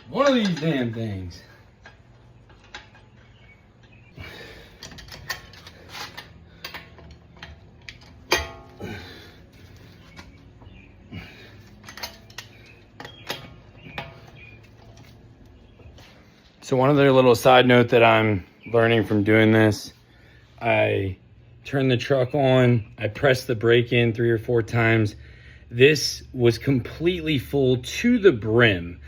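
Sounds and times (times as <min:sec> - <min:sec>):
metal tools clinking and knocking: 0:00.0 - 0:04.0, 0:04.8 - 0:08.8, 0:11.6 - 0:15.2.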